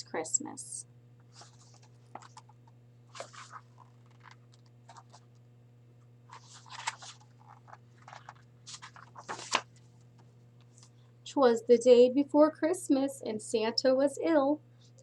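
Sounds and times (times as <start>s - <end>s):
low steady hum: 0.0s - 15.0s
book pages rustling: 1.2s - 5.4s, 6.3s - 11.0s.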